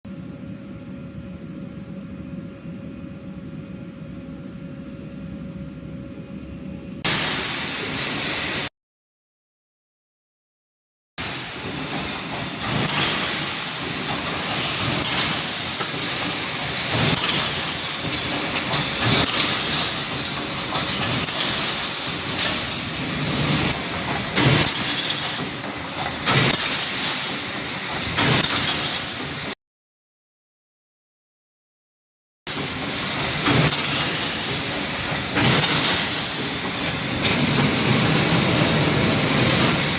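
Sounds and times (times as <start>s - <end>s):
machine hiss: 7.1s - 8.7s, 11.2s - 29.5s
machine clattering: 11.2s - 29.6s, 32.5s - 39.9s.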